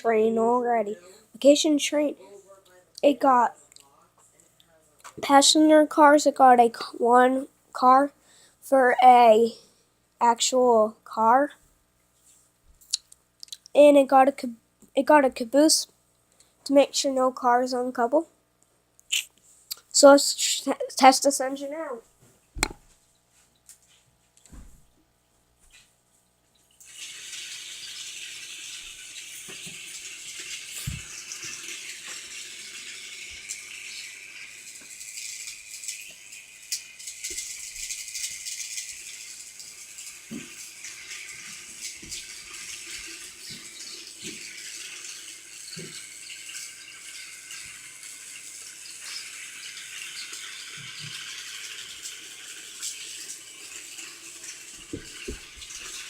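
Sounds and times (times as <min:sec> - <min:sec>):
toy train motor rattling: 0:26.8 - 0:56.0.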